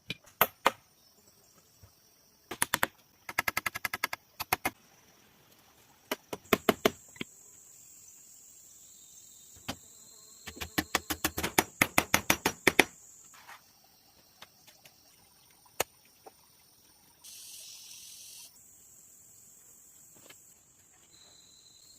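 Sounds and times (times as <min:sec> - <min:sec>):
high insect drone: 0:06.6 - 0:15.4, 0:16.5 - 0:21.9
tool striking bamboo: 0:10.5 - 0:12.9.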